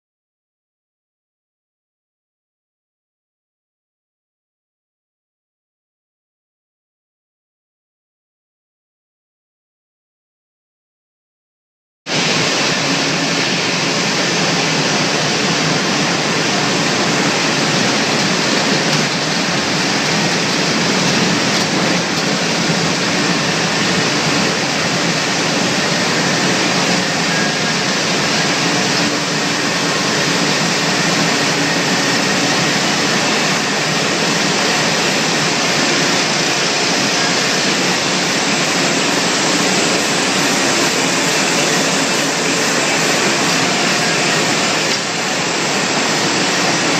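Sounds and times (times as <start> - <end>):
conveyor machinery running: 12.1 - 46.9.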